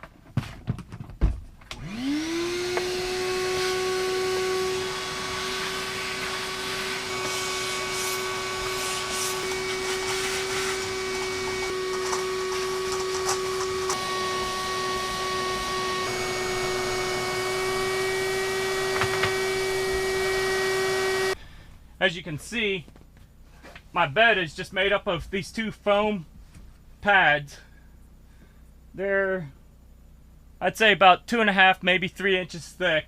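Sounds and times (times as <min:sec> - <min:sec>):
vacuum cleaner humming: 0:01.7 - 0:21.7.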